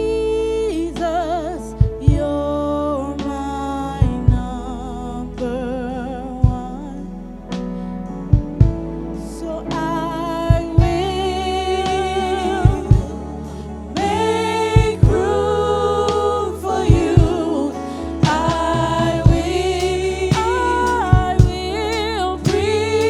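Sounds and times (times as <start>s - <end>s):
gospel singing voices: 0.0s - 7.9s, 9.0s - 23.0s
low bass: 0.0s - 23.0s
low thumps: 7.6s - 9.0s, 9.9s - 13.3s, 14.0s - 23.0s.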